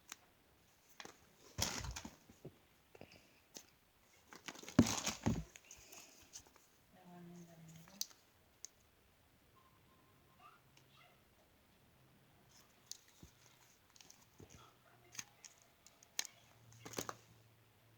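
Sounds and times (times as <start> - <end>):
crinkling rustle: 0.0 - 2.5, 3.5 - 6.8, 12.5 - 17.3.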